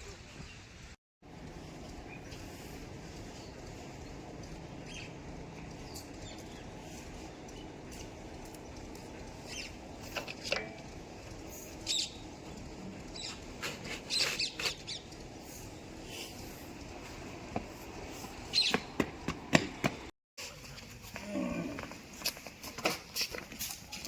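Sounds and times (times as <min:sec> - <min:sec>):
steady low rumble: 0:01.2 - 0:14.1.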